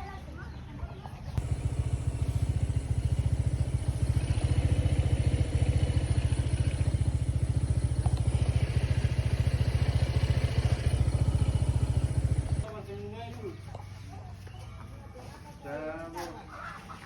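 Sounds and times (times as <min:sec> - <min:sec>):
motorcycle engine running: 0:01.4 - 0:12.7.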